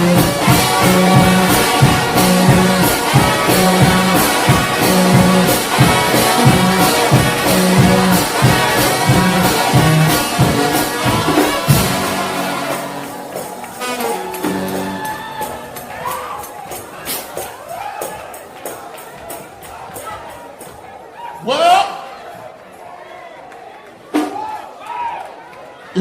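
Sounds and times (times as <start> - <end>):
pulsing bass notes: 0.0 - 16.0
gospel brass band playing: 0.0 - 17.8
drums: 0.0 - 20.8, 24.0 - 24.6.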